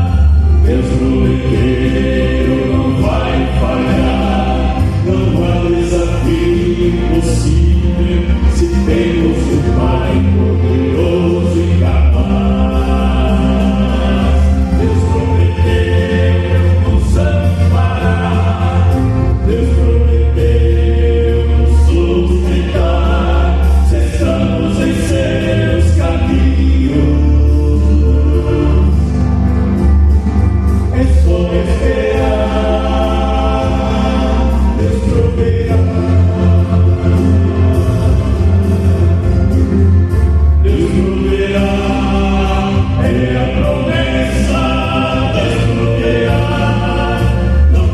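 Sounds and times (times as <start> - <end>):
steady bass accompaniment: 0.0 - 47.9
vocal quartet singing a hymn: 0.0 - 47.9.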